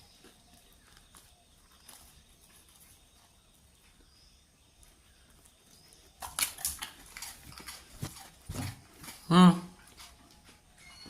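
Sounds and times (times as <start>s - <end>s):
dog crunching a biscuit: 5.5s - 10.7s.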